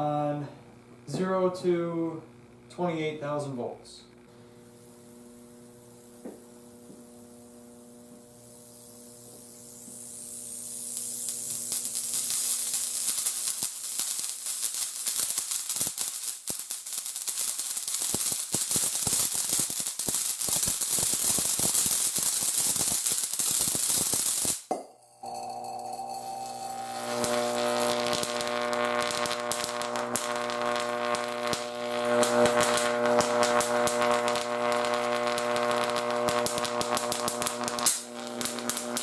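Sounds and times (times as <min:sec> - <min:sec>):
mains hum: 0:00.0 - 0:13.9, 0:24.7 - 0:39.0
electric discharge crackling: 0:04.5 - 0:39.0.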